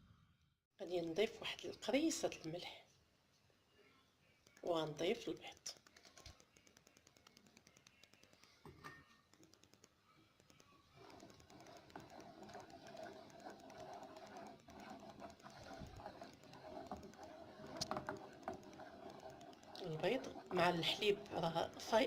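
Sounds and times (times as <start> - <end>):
milk simmering: 4.5 - 22.0
spoon stirring in pot: 4.5 - 22.0.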